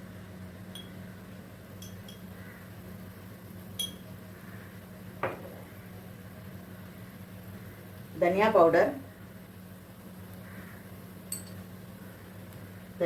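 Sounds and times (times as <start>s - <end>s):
steady low hum: 0.0s - 13.0s
spoon clinking on containers: 1.8s - 2.3s.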